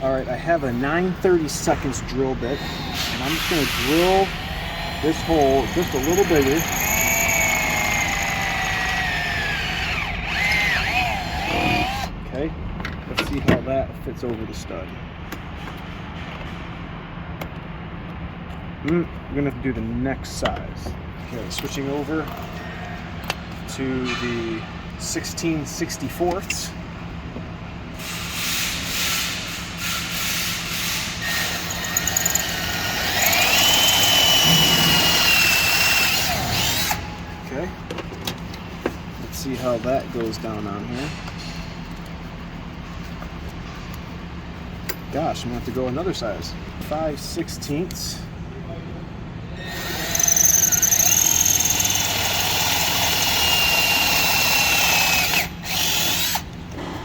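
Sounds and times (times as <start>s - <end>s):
electric drill whining into metal: 2.6s - 12.1s, 31.2s - 37.1s, 49.6s - 56.5s.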